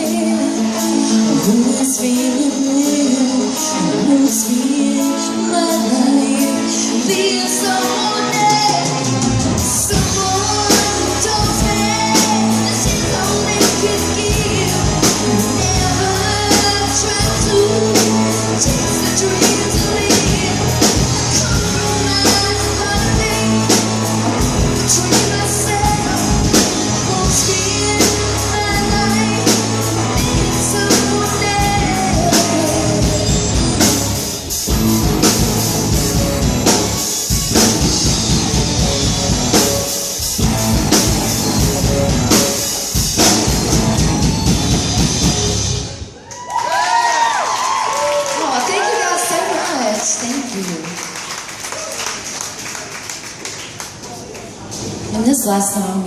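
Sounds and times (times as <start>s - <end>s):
person singing: 0.0s - 34.2s
guitar: 0.0s - 56.0s
drum kit beat: 6.4s - 46.2s.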